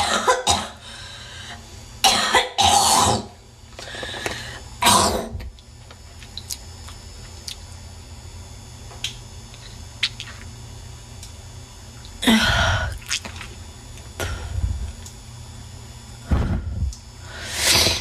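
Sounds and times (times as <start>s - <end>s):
woman coughing: 0.0s - 0.8s, 2.0s - 3.3s.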